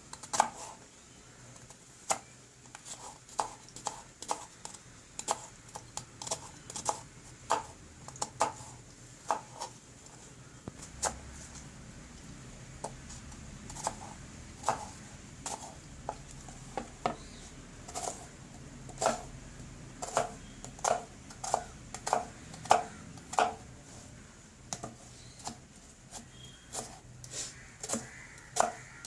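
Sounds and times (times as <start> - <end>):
knife chopping on board: 6.2 - 8.7, 9.3 - 9.7, 13.7 - 14.9, 19.0 - 19.3, 20.0 - 23.6, 27.8 - 28.9.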